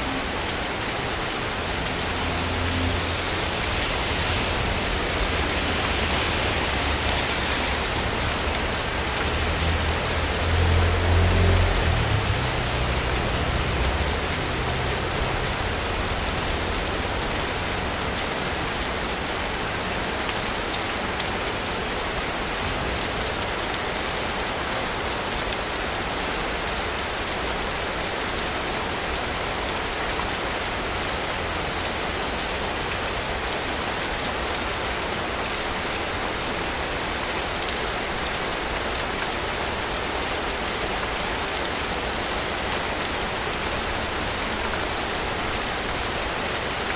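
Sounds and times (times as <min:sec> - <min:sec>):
rain falling hiss: 0:00.0 - 0:46.9
low rumble: 0:01.0 - 0:18.0.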